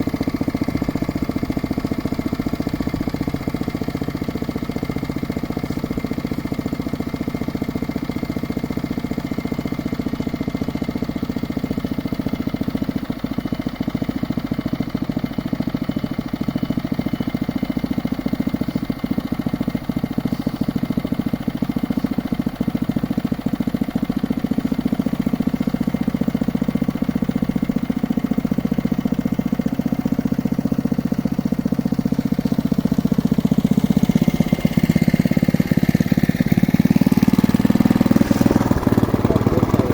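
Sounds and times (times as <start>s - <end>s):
drilling rig engine running: 20.2s - 21.2s, 33.5s - 39.9s.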